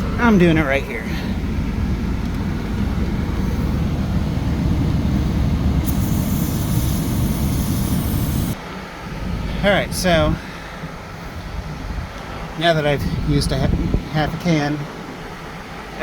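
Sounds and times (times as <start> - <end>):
air-conditioning fan running: 0.0 - 10.5
engine idling: 0.0 - 11.8
aerosol spray can hissing: 5.8 - 8.6.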